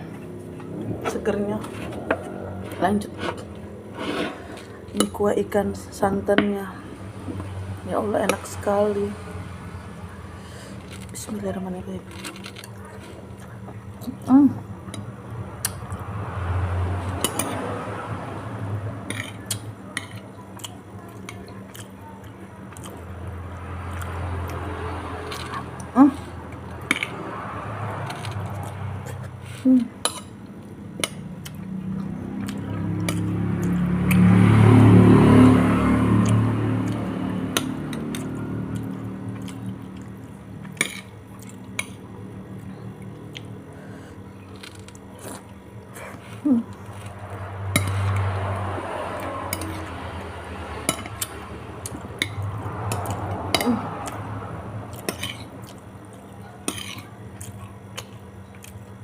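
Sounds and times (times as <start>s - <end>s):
low rumble: 0.0s - 3.9s.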